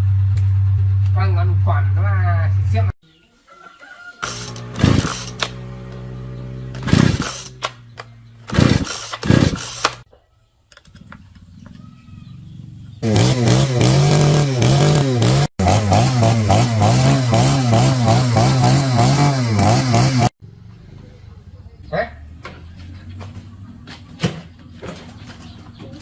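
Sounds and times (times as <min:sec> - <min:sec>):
chainsaw engine running: 0:04.2 - 0:10.0, 0:13.0 - 0:20.4.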